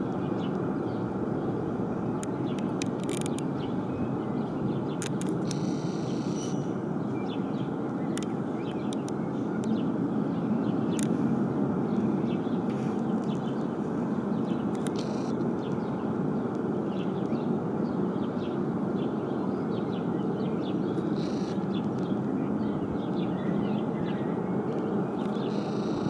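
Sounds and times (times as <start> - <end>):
birds chirping: 0.0 - 11.1, 19.7 - 26.0
distant rocket engine roar: 0.0 - 26.0.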